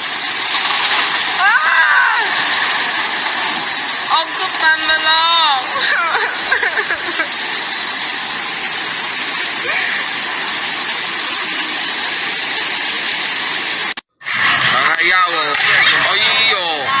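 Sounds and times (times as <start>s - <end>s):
floodwater rushing: 0.0s - 14.0s
voices: 4.1s - 7.3s.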